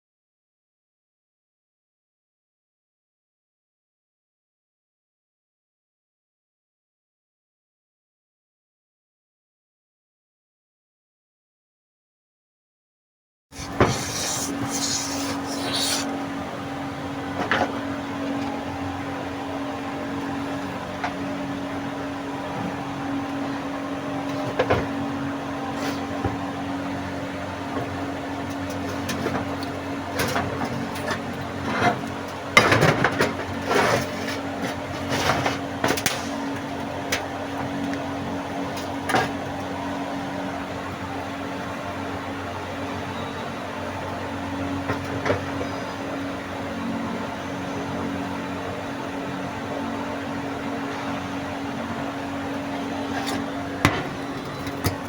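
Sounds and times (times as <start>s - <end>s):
steady mechanical hum: 13.5s - 55.0s.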